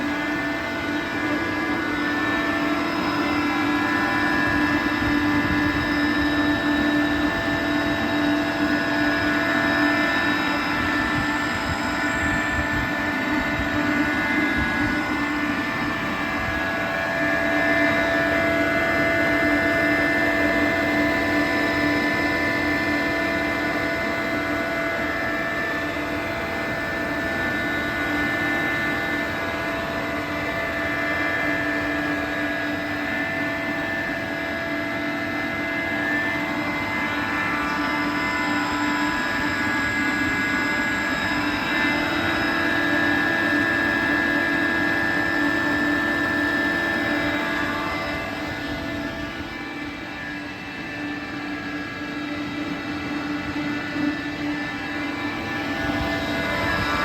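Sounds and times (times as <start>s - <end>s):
air compressor running: 0.0s - 57.0s.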